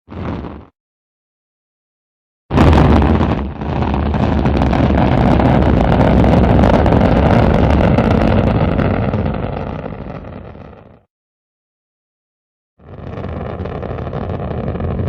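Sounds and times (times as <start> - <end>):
rocket launch roar: 2.5 - 11.0, 12.8 - 15.0.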